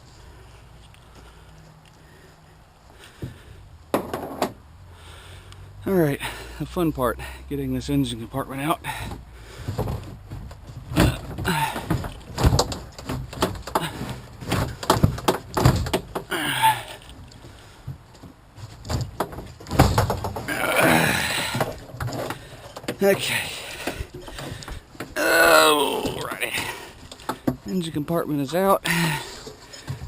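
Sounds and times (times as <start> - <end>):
knocks and thumps: 3.2 - 4.6, 8.9 - 16.6, 17.2 - 27.8
scraping and rubbing: 9.1 - 16.3.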